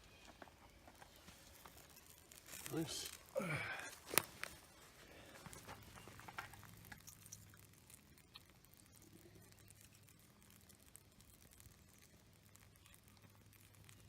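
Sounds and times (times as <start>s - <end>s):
faint ticks: 0.2s - 14.0s.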